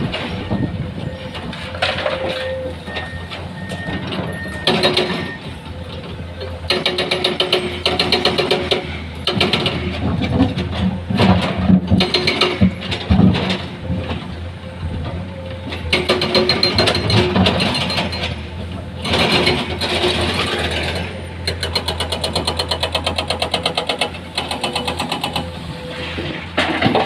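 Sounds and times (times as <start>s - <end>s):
excavator diesel engine running: 0.0s - 27.0s
bucket clattering and scraping: 26.0s - 27.0s.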